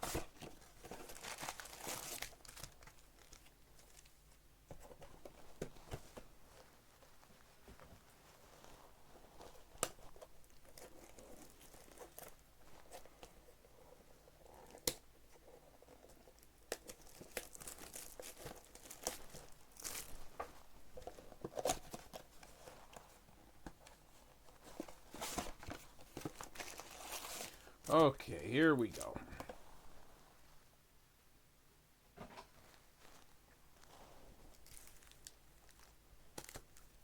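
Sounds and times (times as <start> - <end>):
packaging tearing and crinkling: 0.9 - 3.4, 16.7 - 20.2, 34.5 - 36.9.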